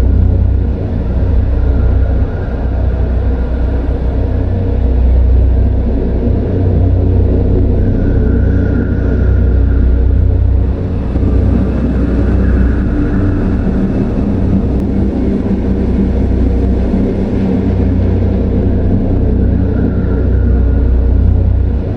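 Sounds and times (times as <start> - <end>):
deep rumbling drone: 0.0 - 21.9
faint high eerie tone: 7.7 - 21.9.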